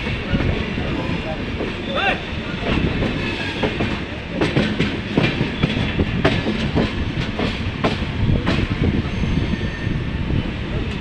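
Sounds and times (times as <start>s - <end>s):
train rumbling: 0.0s - 11.0s
wheels clacking over rail joints: 2.6s - 8.8s.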